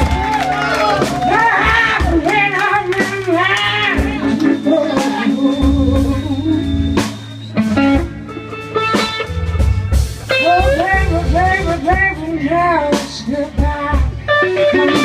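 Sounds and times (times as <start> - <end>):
blues band playing: 0.0 - 15.0
person singing: 0.8 - 7.2, 10.4 - 15.0.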